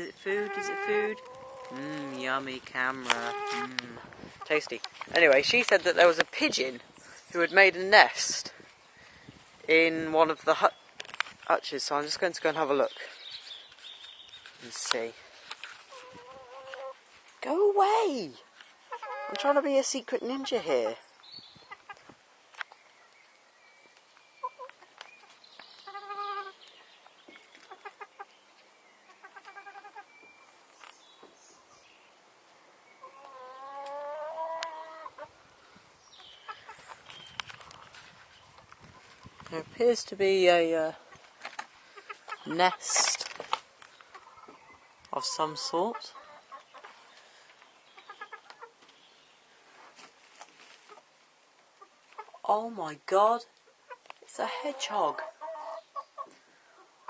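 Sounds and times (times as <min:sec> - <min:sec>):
hens clucking: 0:00.0 - 0:06.8, 0:15.9 - 0:17.1, 0:18.8 - 0:22.2, 0:24.4 - 0:28.4, 0:29.1 - 0:30.2, 0:33.0 - 0:35.4, 0:36.2 - 0:39.5, 0:41.0 - 0:49.0, 0:50.4 - 0:51.1, 0:51.8 - 0:52.4, 0:53.6 - 0:57.0
hen clucking softly: 0:15.9 - 0:17.0, 0:18.9 - 0:19.5, 0:33.0 - 0:35.3, 0:48.0 - 0:48.8, 0:53.9 - 0:57.0.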